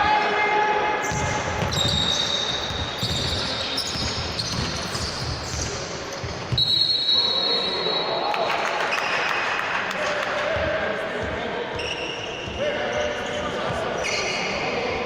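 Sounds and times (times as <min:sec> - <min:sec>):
shrill referee whistle: 0:01.1 - 0:05.6, 0:06.5 - 0:08.3
basketball bouncing on floor: 0:02.7 - 0:06.7.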